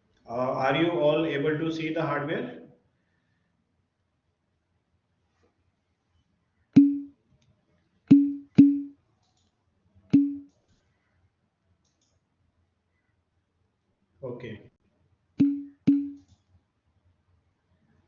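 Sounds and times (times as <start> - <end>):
sharp knocks with low ring: 6.8 - 7.1, 8.1 - 8.9, 10.2 - 10.5, 15.4 - 16.2.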